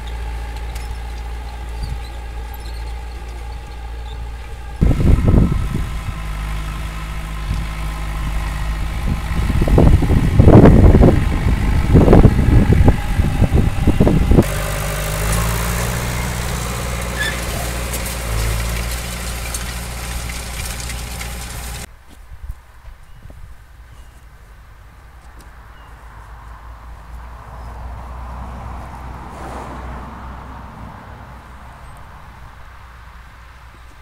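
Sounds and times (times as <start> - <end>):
tractor diesel engine running: 0.0 - 21.9.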